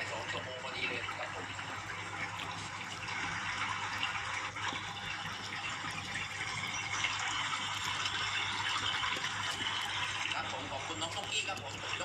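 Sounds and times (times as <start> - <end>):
rushing water: 0.0 - 12.0.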